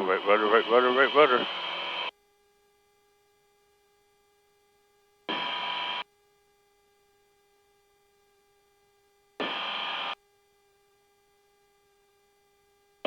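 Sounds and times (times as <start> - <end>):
static hiss bursts: 0.0 - 2.1, 5.3 - 6.0, 9.4 - 10.2
faint electrical whine: 0.0 - 13.0.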